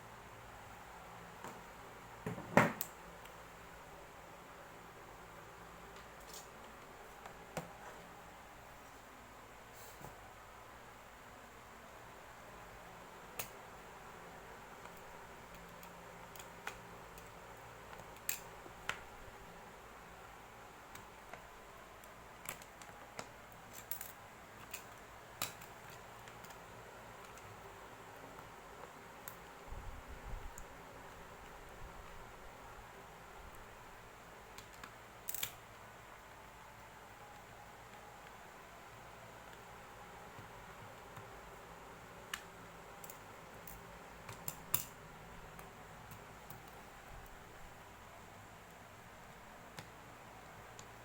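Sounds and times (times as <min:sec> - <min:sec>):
faint steady hiss: 0:00.0 - 0:51.0
small parts clicking and tapping: 0:05.9 - 0:07.9, 0:13.3 - 0:13.7, 0:14.7 - 0:19.1, 0:20.2 - 0:29.6, 0:34.5 - 0:35.8, 0:40.3 - 0:47.4, 0:49.7 - 0:51.0
faint hiss: 0:08.6 - 0:12.4.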